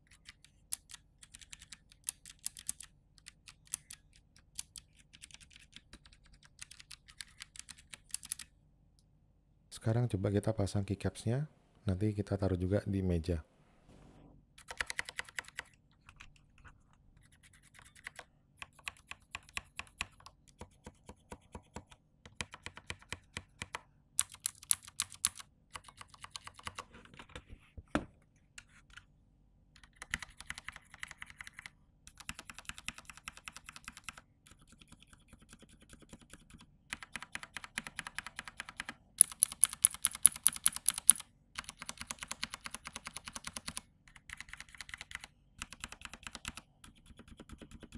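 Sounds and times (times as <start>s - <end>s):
mechanical keyboard keystroke clicks: 0.1s - 8.5s, 14.6s - 16.3s, 22.4s - 26.8s, 29.8s - 46.6s.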